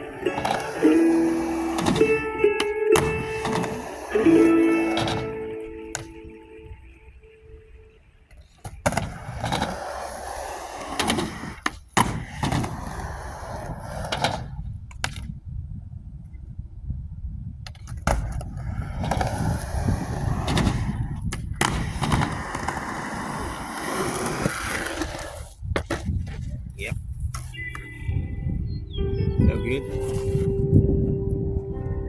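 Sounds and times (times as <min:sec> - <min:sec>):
skateboard clacks: 0:00.0 - 0:06.3, 0:08.2 - 0:15.4, 0:17.6 - 0:26.6
skateboard wheels rolling on pavement: 0:00.0 - 0:27.9, 0:29.7 - 0:31.0.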